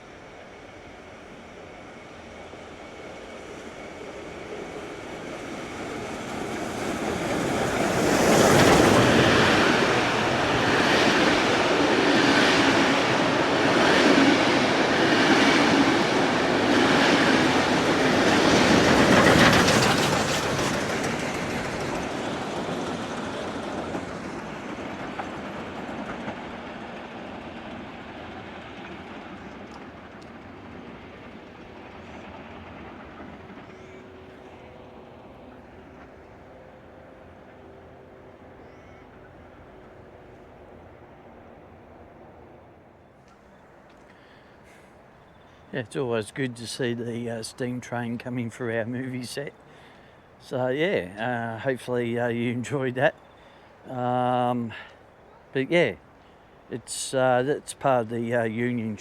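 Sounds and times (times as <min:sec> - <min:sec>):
train passing: 0:00.0 - 0:59.0
train wheels clacking over rail joints: 0:05.6 - 0:34.0.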